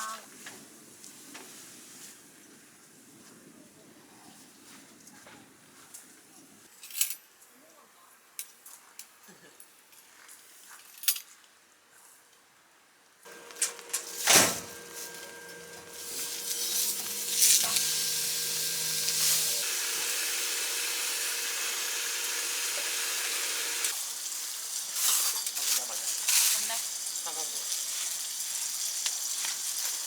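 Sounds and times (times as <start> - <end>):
food sizzling in a hot pan: 15.0 - 30.0.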